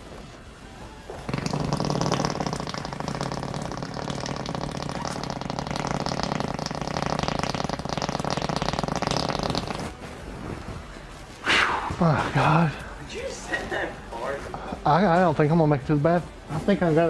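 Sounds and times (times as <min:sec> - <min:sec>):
wet sputtering fart: 0:01.2 - 0:10.0.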